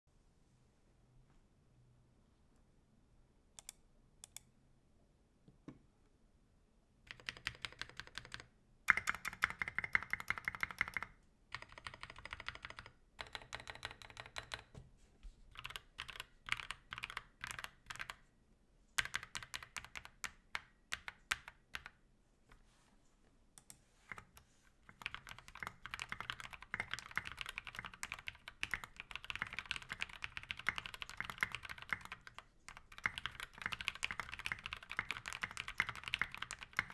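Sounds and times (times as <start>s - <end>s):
mechanical keyboard typing: 7.1s - 14.7s, 15.6s - 18.2s, 19.0s - 22.0s, 24.9s - 36.9s.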